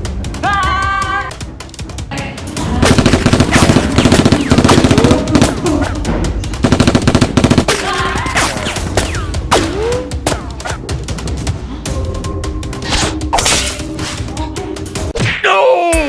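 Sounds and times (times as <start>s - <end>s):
automatic gunfire bursts: 2.8s - 5.6s, 6.6s - 7.7s.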